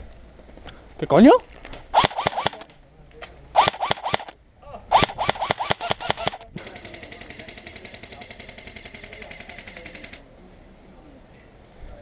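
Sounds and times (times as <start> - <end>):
airsoft rifle firing bursts: 1.9 - 2.7, 3.6 - 10.2.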